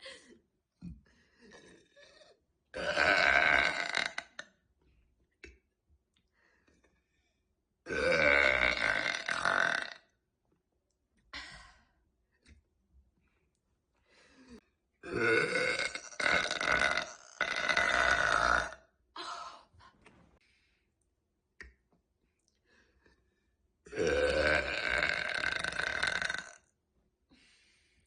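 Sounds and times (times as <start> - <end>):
woman burping: 1.5 - 4.4, 7.9 - 10.0, 15.0 - 19.6, 23.9 - 26.6.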